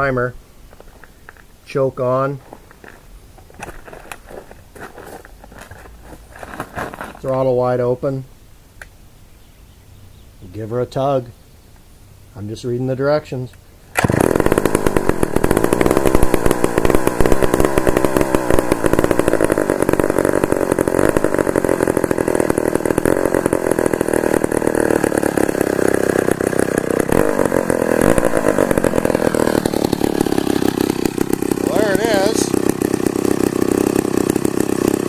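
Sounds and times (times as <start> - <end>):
chainsaw engine running: 2.4 - 7.5, 13.9 - 35.0.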